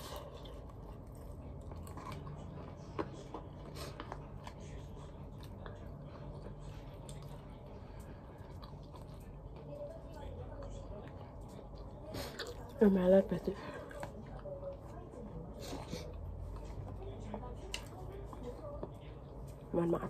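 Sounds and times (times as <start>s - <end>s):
person chewing food: 0.0s - 12.9s.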